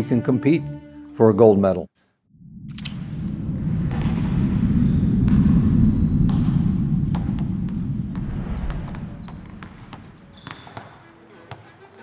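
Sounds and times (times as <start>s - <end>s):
loud low rumble: 2.3s - 10.3s
basketballs bouncing on gym floor: 6.3s - 11.9s.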